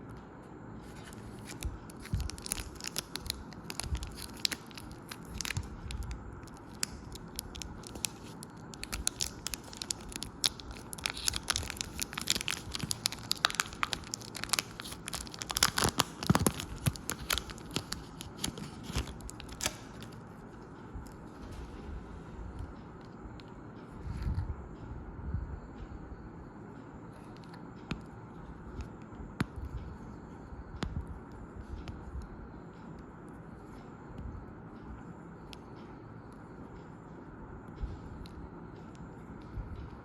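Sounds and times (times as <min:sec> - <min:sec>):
wrappers tearing and crinkling: 0:01.0 - 0:20.1.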